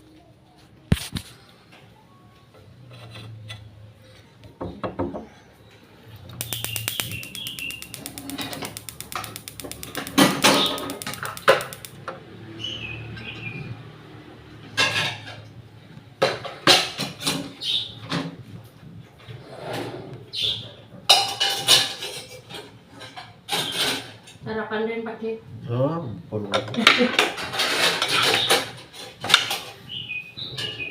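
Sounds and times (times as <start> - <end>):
rapid even clicks: 6.4 - 12.0.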